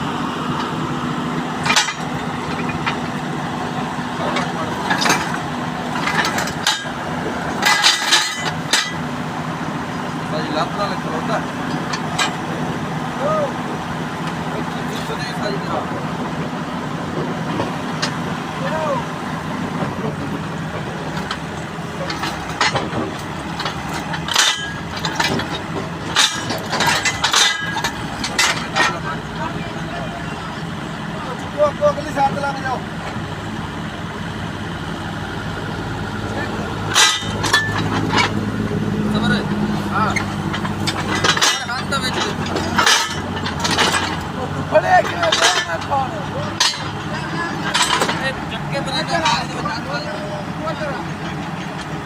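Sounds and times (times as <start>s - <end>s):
excavator engine idling: 0.0s - 52.0s
sharp metallic clanks: 0.5s - 13.6s, 17.1s - 33.2s, 34.9s - 52.0s
sharp knocks on track chain: 6.0s - 7.0s, 7.6s - 9.0s, 21.1s - 29.1s, 36.9s - 38.4s, 40.0s - 44.3s, 45.0s - 48.4s.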